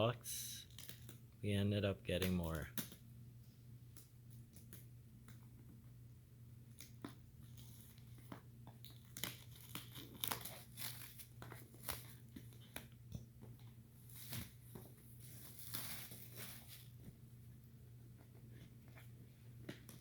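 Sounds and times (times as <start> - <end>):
packaging crinkling and tearing: 0.6 - 1.3, 6.7 - 13.0, 13.6 - 17.1.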